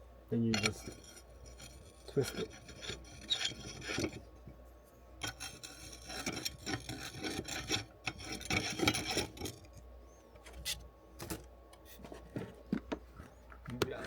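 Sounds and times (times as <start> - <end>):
rail scraping and rubbing: 0.5 - 4.3, 5.2 - 9.8.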